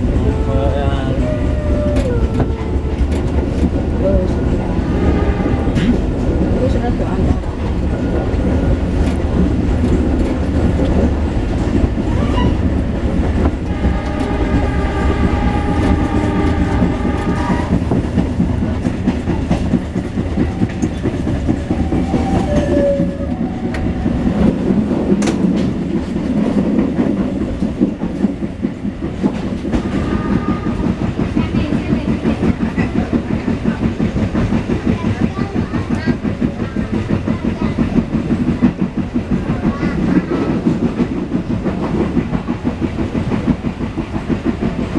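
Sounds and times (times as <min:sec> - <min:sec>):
train rumbling along track: 0:00.0 - 0:44.9
train horn: 0:04.3 - 0:06.1, 0:13.6 - 0:18.0, 0:22.0 - 0:23.7, 0:29.8 - 0:30.9.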